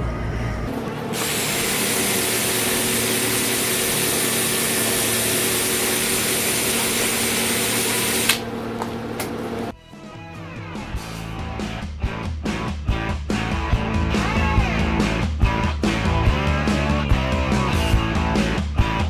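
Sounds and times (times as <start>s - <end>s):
power tool running: 0.7s - 9.7s.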